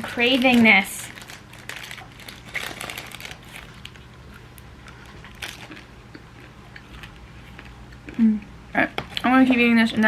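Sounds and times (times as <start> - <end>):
plastic wrapper crinkling: 0.0 - 5.9.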